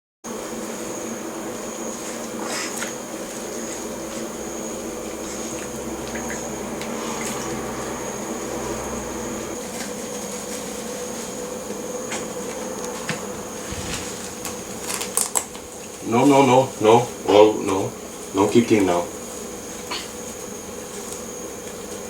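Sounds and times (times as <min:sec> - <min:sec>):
background hum: 0:00.3 - 0:22.0
thin high whine: 0:12.3 - 0:19.1
bath water splashing: 0:13.6 - 0:16.4.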